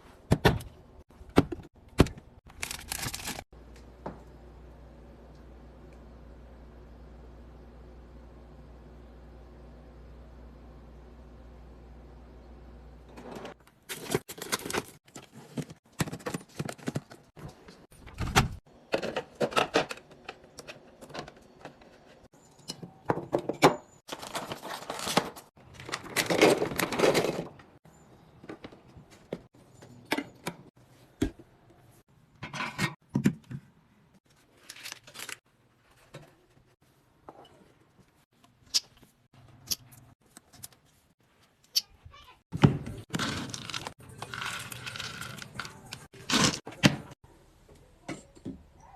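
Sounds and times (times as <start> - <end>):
packaging rustling: 2.5 - 3.4.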